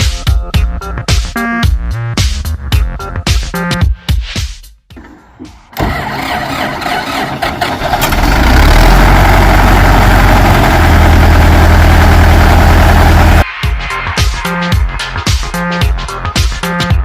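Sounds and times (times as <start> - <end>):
tractor engine starting and running: 5.0 - 13.4.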